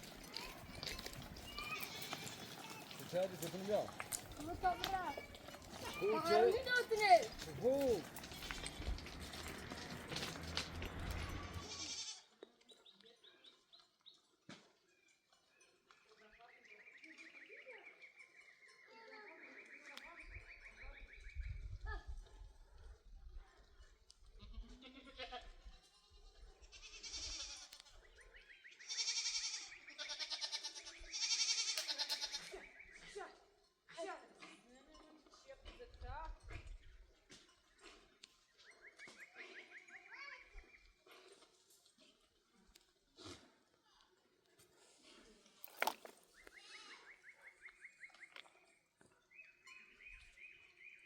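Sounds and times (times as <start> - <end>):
goats bleating: 0.1 - 12.3, 24.4 - 25.6, 26.7 - 27.8, 28.9 - 32.6.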